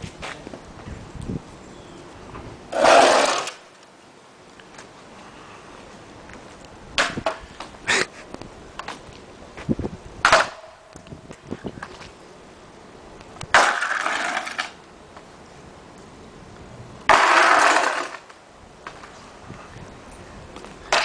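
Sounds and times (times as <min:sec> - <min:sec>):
skis scraping over asphalt: 0:02.7 - 0:03.8, 0:13.6 - 0:14.8, 0:16.5 - 0:19.7.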